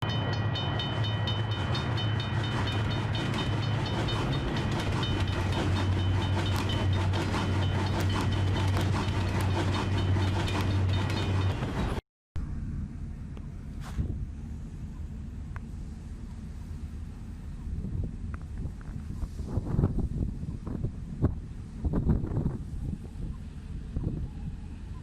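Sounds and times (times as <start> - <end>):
high steady tones: 0.0 - 12.0
train low rumble: 0.0 - 25.0
train wheels clattering over rail joints: 0.6 - 12.0.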